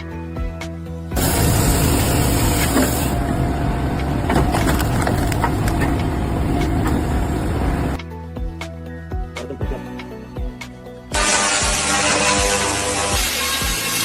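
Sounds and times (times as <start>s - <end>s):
machinery rumble: 1.2s - 8.0s
knocks and clicks: 4.1s - 7.2s.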